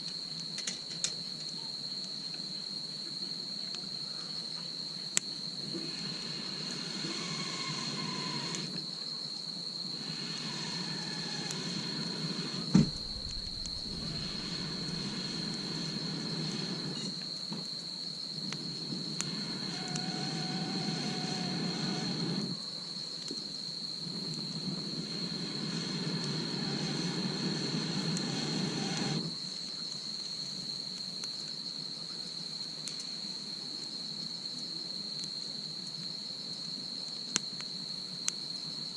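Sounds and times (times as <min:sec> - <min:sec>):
insects trilling: 0:00.0 - 0:38.9
low rushing noise: 0:12.6 - 0:17.0.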